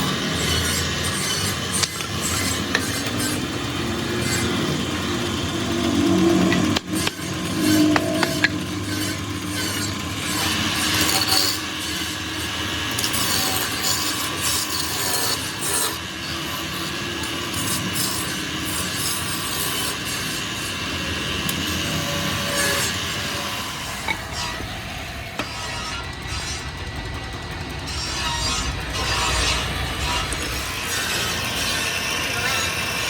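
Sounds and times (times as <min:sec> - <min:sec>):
abrasive rubbing and scraping: 0:04.4 - 0:09.8.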